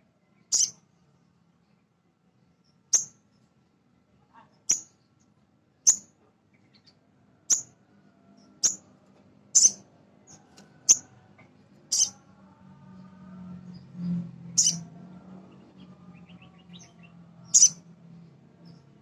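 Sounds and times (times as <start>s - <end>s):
bird high-pitched chips: 0.5s - 0.7s, 9.6s - 9.8s, 11.9s - 12.2s, 14.6s - 14.8s, 17.6s - 17.8s.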